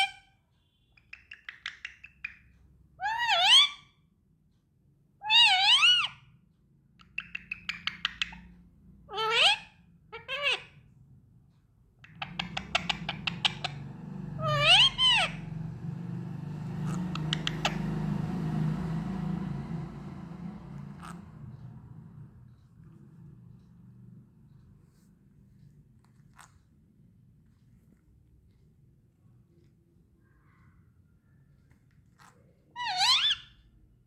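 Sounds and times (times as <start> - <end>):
parrot warbling calls: 3.0 - 3.9, 5.2 - 6.2, 9.1 - 10.8, 12.0 - 15.5, 16.8 - 18.1, 20.1 - 21.5, 32.8 - 33.6.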